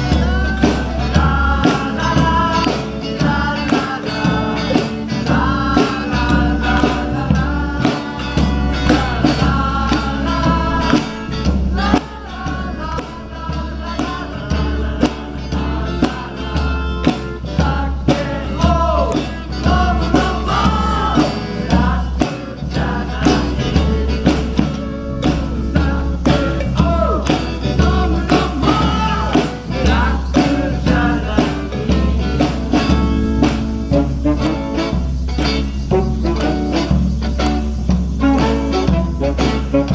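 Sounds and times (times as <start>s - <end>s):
person singing: 0.0s - 37.6s, 38.2s - 39.9s
pulsing bass line: 0.0s - 39.9s
strummed guitar rhythm: 0.0s - 39.9s.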